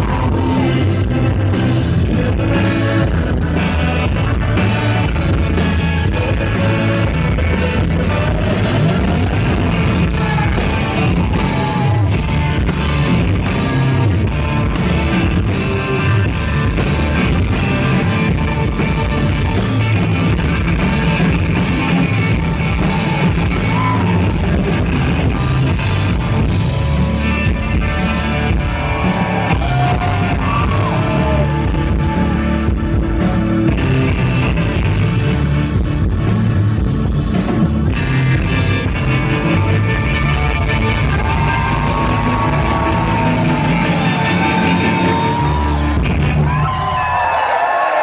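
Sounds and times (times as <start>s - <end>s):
person singing: 0.0s - 13.9s
rock band playing loudly: 0.0s - 48.0s.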